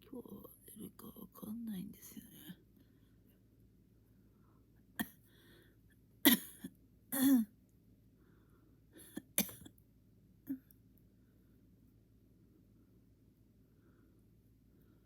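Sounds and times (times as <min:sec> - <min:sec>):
person coughing: 0:06.3 - 0:07.5, 0:09.0 - 0:09.7.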